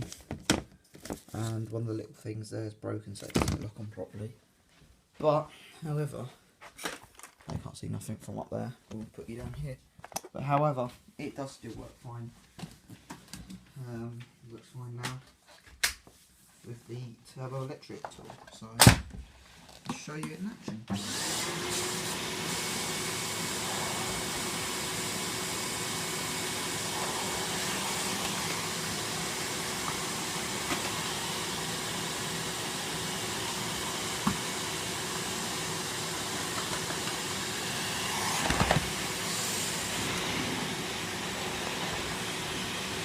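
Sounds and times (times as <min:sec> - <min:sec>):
vacuum cleaner running: 0:20.9 - 0:43.0.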